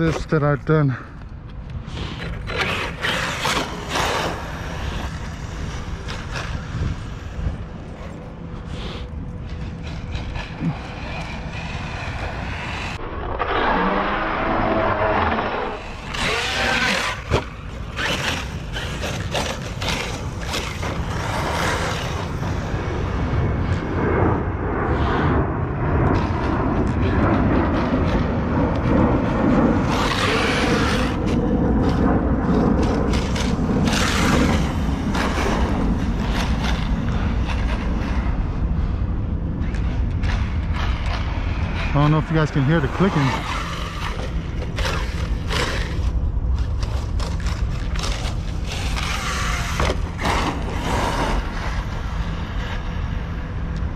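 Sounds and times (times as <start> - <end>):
electric motor whining: 10.5 - 22.3.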